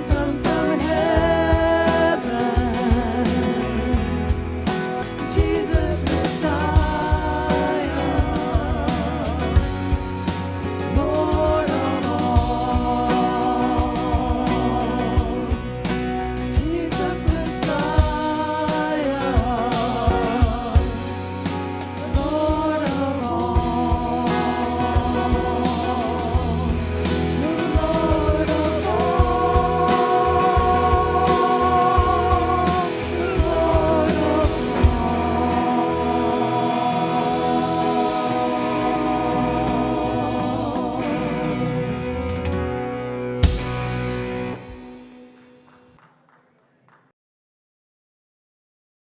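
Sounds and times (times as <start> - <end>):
person singing: 0.0 - 4.2, 5.0 - 9.8, 10.8 - 15.8, 16.4 - 21.3, 21.9 - 42.0
bass guitar: 0.0 - 45.9
drum kit: 0.0 - 46.0
guitar: 0.0 - 47.1.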